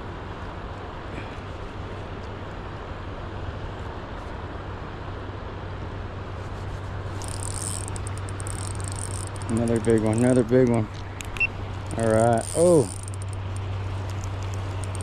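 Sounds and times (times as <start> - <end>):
river water flowing: 7.0 - 15.0
rapid high ticking: 7.1 - 15.0.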